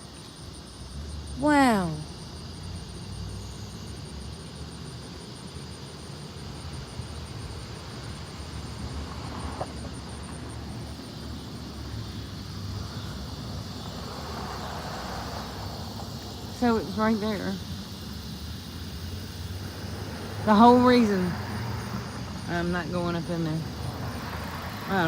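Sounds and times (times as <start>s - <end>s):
pulsing insect trill: 0.0s - 25.0s.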